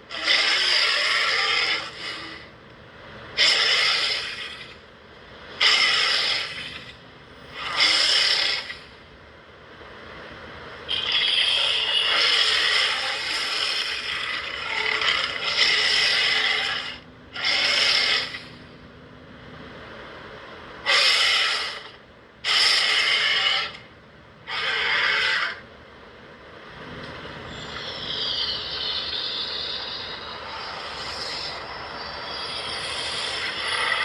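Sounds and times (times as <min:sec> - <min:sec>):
high screech: 0:00.1 - 0:02.5, 0:03.4 - 0:04.8, 0:05.6 - 0:07.0, 0:07.6 - 0:08.9, 0:10.9 - 0:18.6, 0:27.5 - 0:34.0
monster roars: 0:00.1 - 0:02.5, 0:03.4 - 0:04.8, 0:05.6 - 0:06.9, 0:07.6 - 0:08.8, 0:11.0 - 0:18.4, 0:20.9 - 0:23.8, 0:24.5 - 0:25.6, 0:28.1 - 0:34.0.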